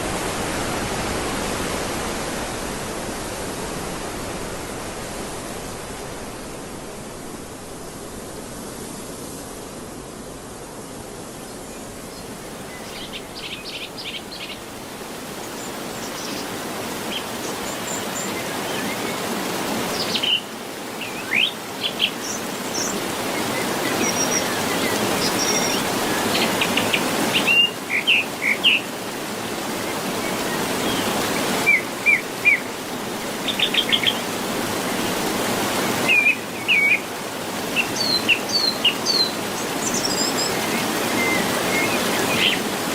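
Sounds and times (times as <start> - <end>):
waterfall rushing: 0.0 - 42.9
birds chirping and trilling: 11.4 - 19.3, 19.9 - 42.8.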